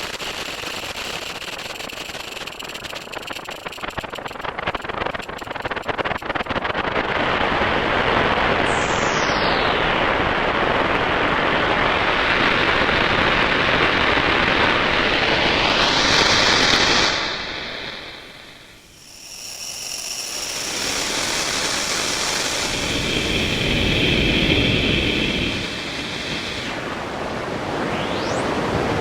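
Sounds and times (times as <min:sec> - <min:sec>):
falling synth sweep: 0:25.4 - 0:29.0
rising synth tone: 0:26.8 - 0:29.0.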